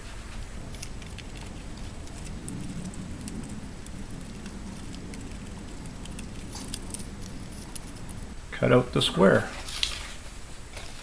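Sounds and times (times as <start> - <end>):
low background hum: 0.6 - 8.4
scissors snipping paper: 0.6 - 8.4.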